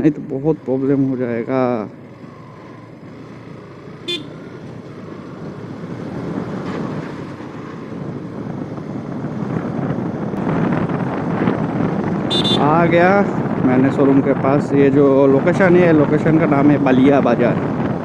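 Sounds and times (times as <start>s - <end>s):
motorcycle riding in traffic: 0.0s - 18.0s
vehicle horn beep: 4.0s - 4.5s, 12.3s - 12.7s.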